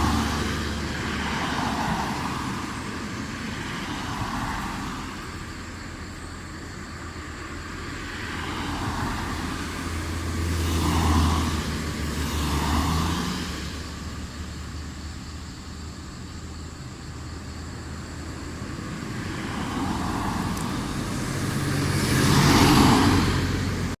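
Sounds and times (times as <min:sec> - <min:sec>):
cars passing on street: 0:00.0 - 0:24.0.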